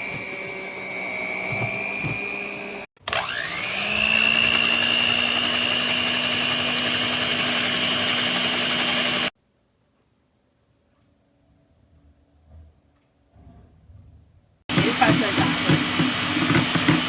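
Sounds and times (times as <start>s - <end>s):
electric hand mixer whining: 0.0s - 9.4s, 14.7s - 17.0s.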